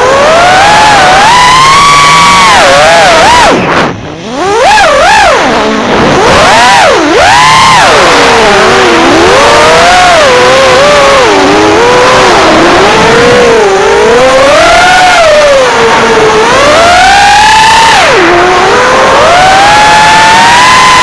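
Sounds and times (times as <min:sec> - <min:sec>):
drone motors whining: 0:00.0 - 0:21.0.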